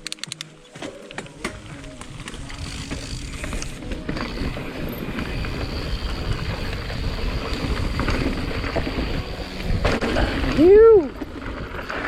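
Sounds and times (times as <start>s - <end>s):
bike clicks: 0.0s - 12.0s
bike tyre rumble on dirt: 1.4s - 12.0s.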